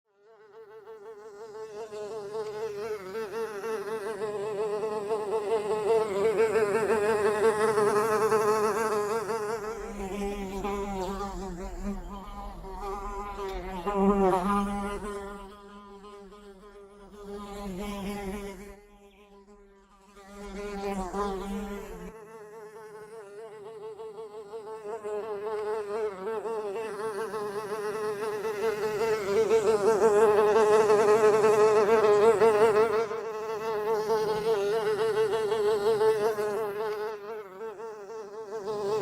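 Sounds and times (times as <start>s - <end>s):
fly buzzing: 0.2s - 39.0s.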